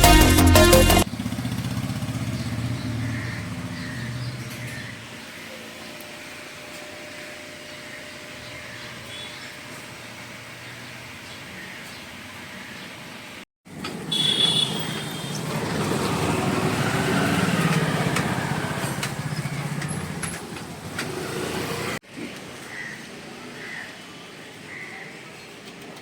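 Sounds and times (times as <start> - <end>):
vehicle engine running: 0.0 - 5.1, 14.1 - 22.0.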